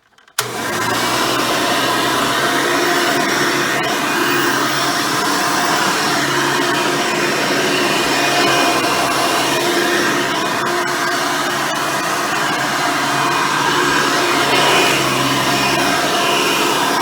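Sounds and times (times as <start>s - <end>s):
upright vacuum cleaner running: 0.4s - 17.0s.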